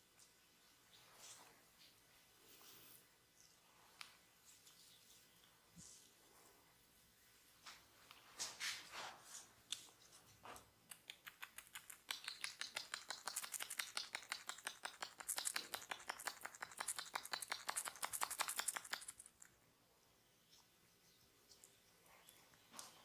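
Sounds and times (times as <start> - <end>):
hands tapping on body: 10.9 - 19.3.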